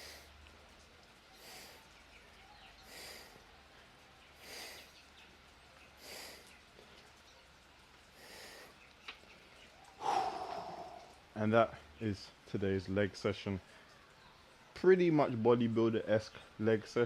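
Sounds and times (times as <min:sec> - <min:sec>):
man breathing hard: 0:02.9 - 0:03.4, 0:04.4 - 0:04.9, 0:06.0 - 0:06.5, 0:08.2 - 0:08.8, 0:10.0 - 0:11.2.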